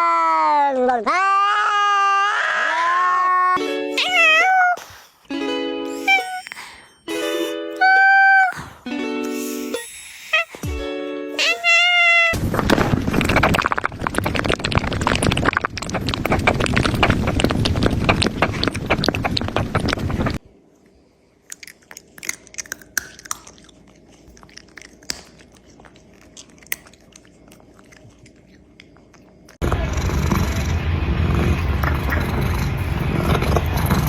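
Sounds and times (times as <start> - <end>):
cat chewing and crunching: 12.4 - 20.4, 21.4 - 34.0.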